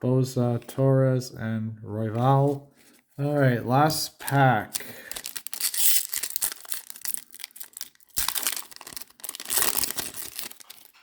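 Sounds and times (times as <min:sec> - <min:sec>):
card pack wrapper tearing and crinkling: 0:04.2 - 0:11.0.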